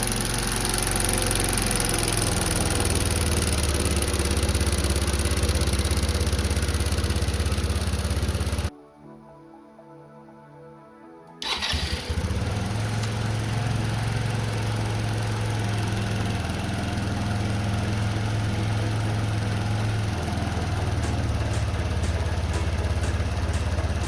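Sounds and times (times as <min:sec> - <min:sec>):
scooter engine idling: 0:00.0 - 0:08.7, 0:11.4 - 0:24.0
tappet ticking: 0:12.4 - 0:24.0.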